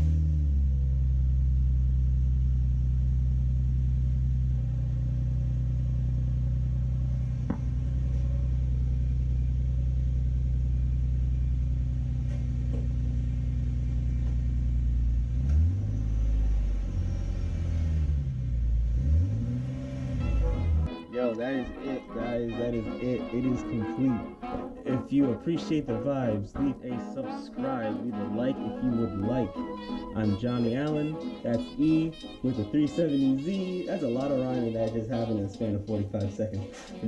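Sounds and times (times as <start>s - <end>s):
car engine idling and revving: 0.0s - 20.9s.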